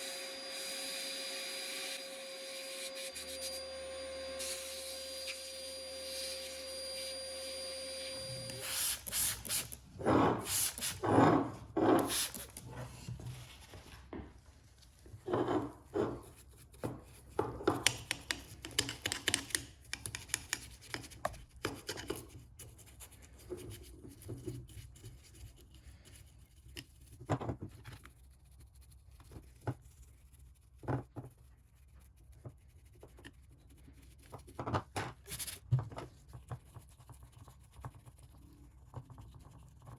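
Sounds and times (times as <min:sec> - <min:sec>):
small electric motor humming: 0:00.0 - 0:08.8
rubbing and scraping on small parts: 0:14.8 - 0:39.9.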